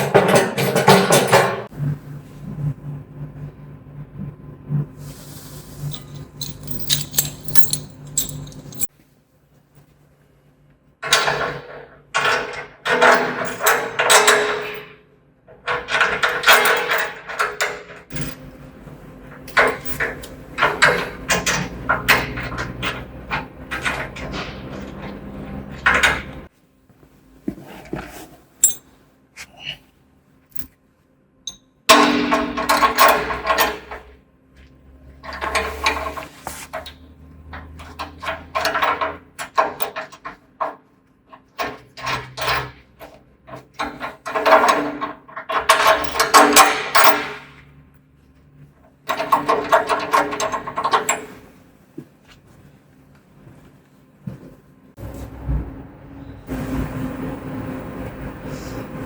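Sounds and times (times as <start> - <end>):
metal parts and tools clanking: 0.0 - 1.7, 5.8 - 8.9, 11.0 - 18.5, 19.2 - 26.5, 28.6 - 28.9, 30.5 - 30.7, 31.5 - 34.2, 35.0 - 47.7, 49.0 - 51.5.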